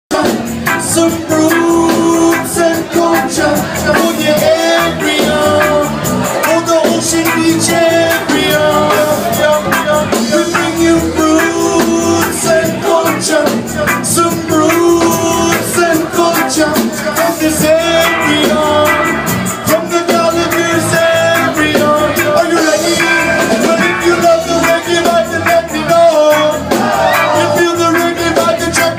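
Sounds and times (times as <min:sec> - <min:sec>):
person singing: 0:00.1 - 0:28.9
reggae band playing: 0:00.1 - 0:28.9
steady drum beat: 0:00.1 - 0:28.9.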